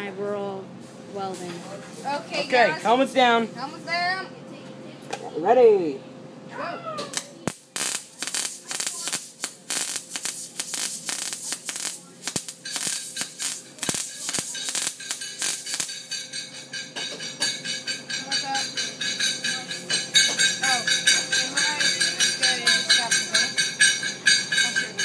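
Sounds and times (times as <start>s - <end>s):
welding arc crackling: 7.1s - 25.0s.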